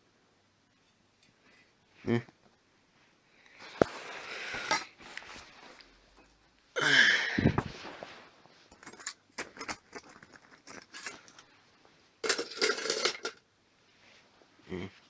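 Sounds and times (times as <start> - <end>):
metal parts clinking and clattering: 8.8 - 11.4, 12.2 - 13.4.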